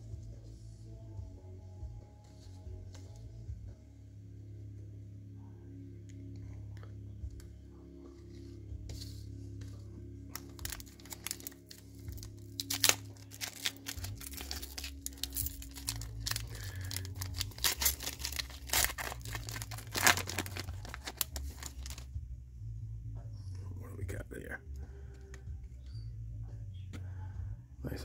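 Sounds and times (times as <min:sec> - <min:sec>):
background music: 0:00.0 - 0:28.0
foil wrapper crinkling and tearing: 0:10.3 - 0:22.1.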